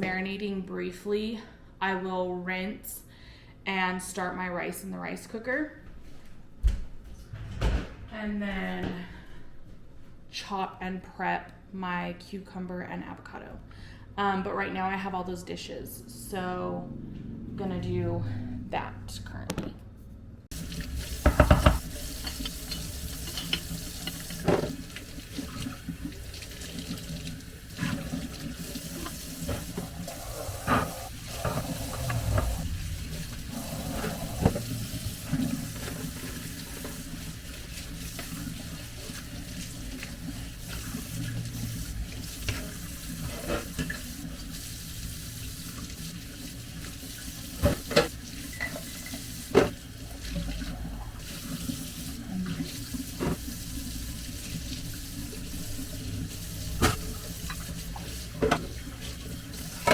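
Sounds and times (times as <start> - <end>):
tap water running into sink: 20.5 - 59.9
dishes clinking: 48.0 - 49.7.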